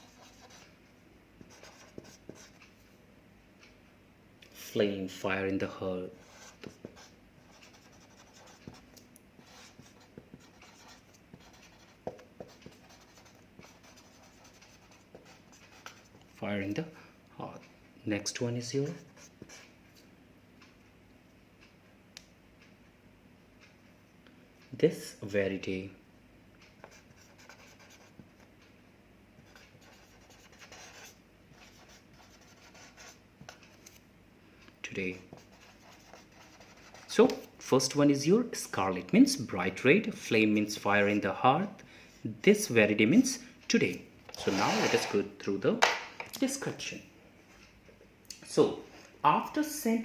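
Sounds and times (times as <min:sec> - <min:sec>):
pen scratching on paper: 0:00.0 - 0:00.7, 0:01.5 - 0:02.6, 0:06.2 - 0:08.8, 0:09.4 - 0:16.2, 0:26.8 - 0:28.3, 0:29.4 - 0:34.0, 0:35.3 - 0:37.2, 0:44.4 - 0:45.2.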